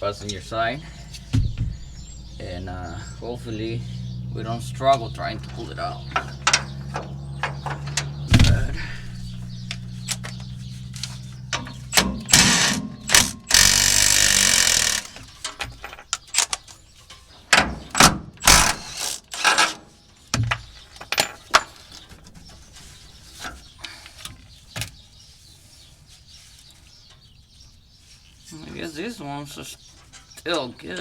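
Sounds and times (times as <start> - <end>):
metal knocks and clinks: 5.5 - 10.6, 11.4 - 16.7, 20.4 - 22.0
socket ratchet clicking: 11.9 - 15.2.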